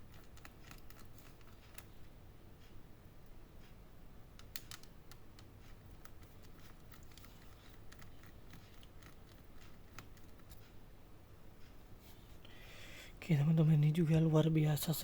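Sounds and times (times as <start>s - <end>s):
low steady hum: 0.0s - 15.0s
small clicks and taps of screws: 4.4s - 8.1s.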